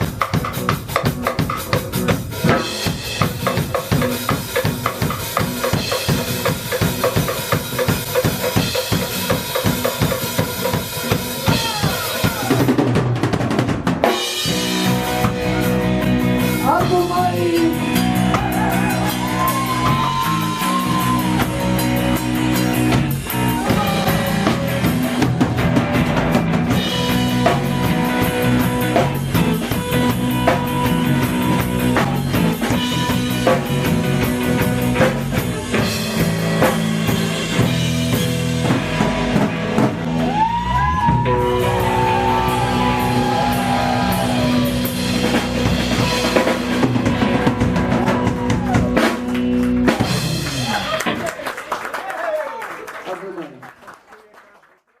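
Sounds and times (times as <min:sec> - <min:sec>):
drum kit playing fast: 0:00.0 - 0:51.7
held bass notes: 0:14.4 - 0:51.1.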